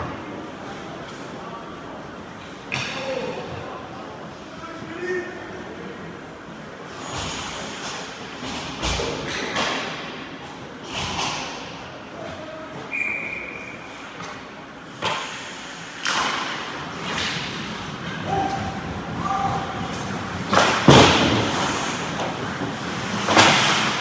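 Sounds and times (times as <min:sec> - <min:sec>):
skate blades scraping ice: 0:15.2 - 0:24.0.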